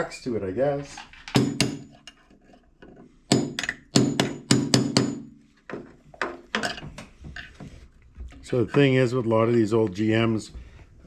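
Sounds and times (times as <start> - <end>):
hammer striking metal: 1.4 - 2.0, 3.3 - 5.4.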